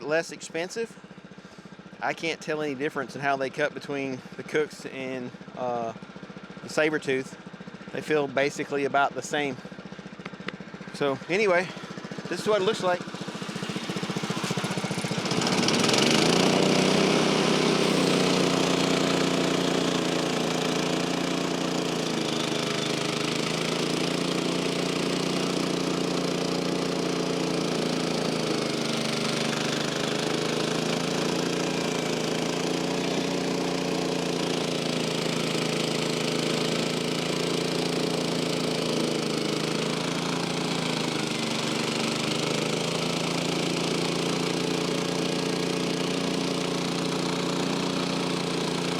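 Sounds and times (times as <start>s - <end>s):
small gas engine revving: 0.0s - 48.9s.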